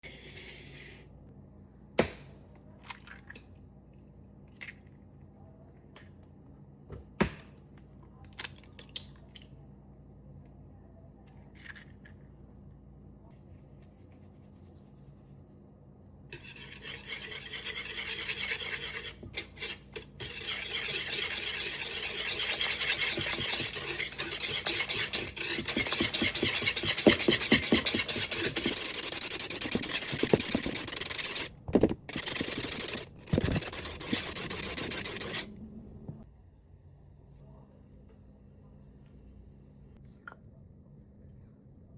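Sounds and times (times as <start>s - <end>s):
rapid stirring in a mixing bowl: 16.4s - 35.5s.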